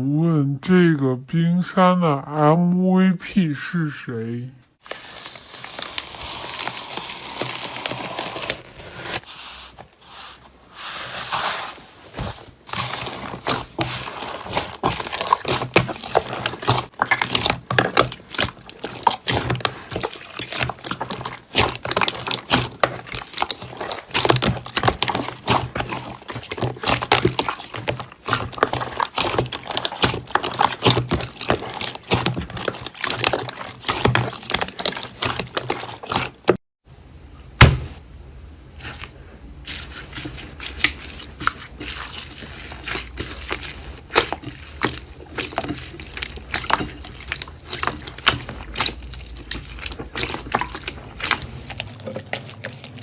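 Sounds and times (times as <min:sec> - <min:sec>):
slime squished by hand: 0:11.0 - 0:36.6, 0:38.8 - 0:53.0.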